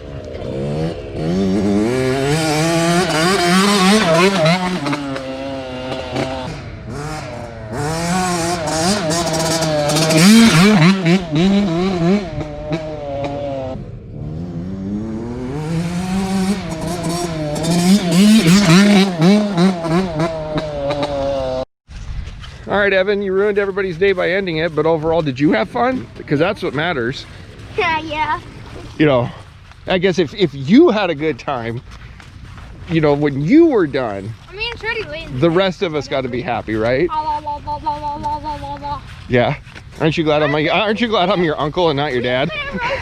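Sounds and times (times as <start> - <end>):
dirt bike engine revving: 0.0 - 21.7.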